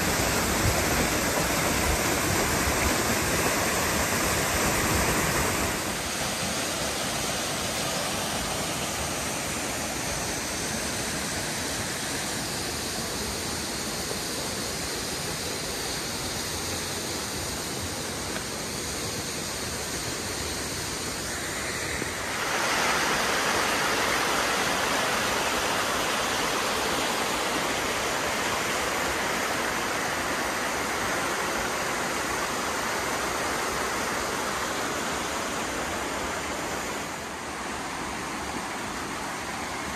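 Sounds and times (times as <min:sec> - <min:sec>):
stream and waterfall rushing: 0:00.0 - 0:39.9.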